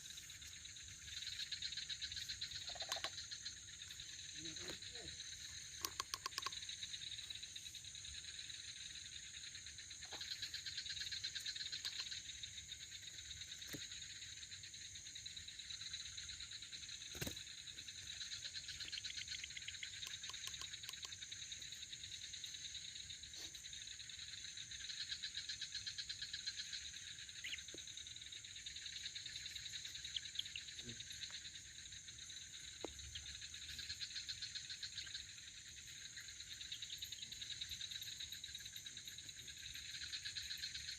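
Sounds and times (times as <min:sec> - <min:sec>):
crickets and insects chirping: 0:00.0 - 0:40.9
faint sharp clicks: 0:05.8 - 0:06.6, 0:19.9 - 0:21.2.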